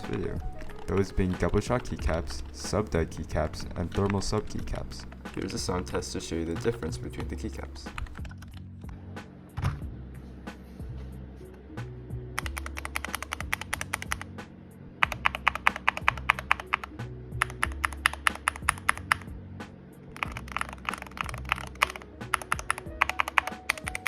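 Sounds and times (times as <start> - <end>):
background music: 0.0 - 24.0
mechanical keyboard key clacks: 20.2 - 24.0.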